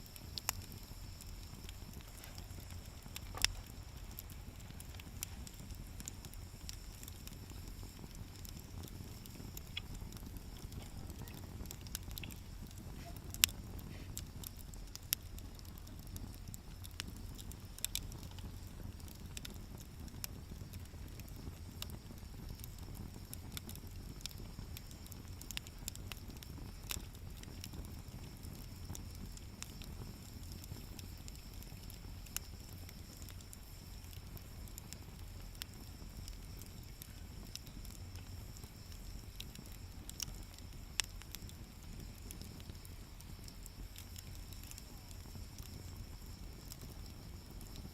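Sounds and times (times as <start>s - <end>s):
wood fire crackling and popping: 0.0s - 47.9s.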